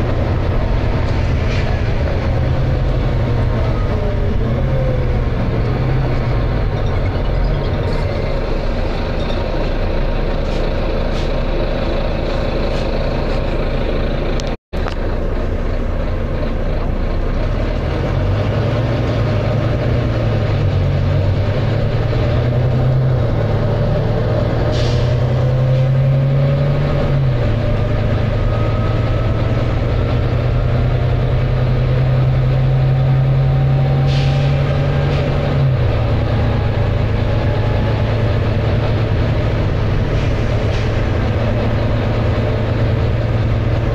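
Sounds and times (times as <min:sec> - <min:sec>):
bus diesel engine thrashing: 0:17.9 - 0:43.9
air brake hiss: 0:24.7 - 0:25.3, 0:34.0 - 0:34.6.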